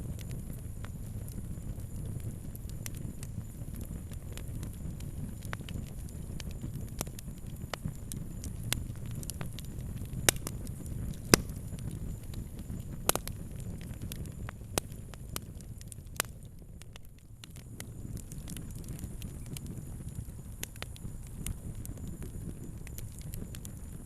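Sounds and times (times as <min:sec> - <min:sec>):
wood fire crackling and popping: 0:00.0 - 0:24.0.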